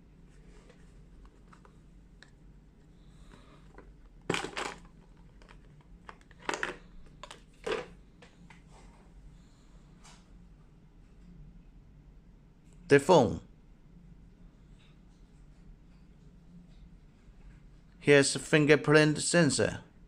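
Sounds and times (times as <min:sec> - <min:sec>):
packaging rustling knocks: 0:03.8 - 0:07.9.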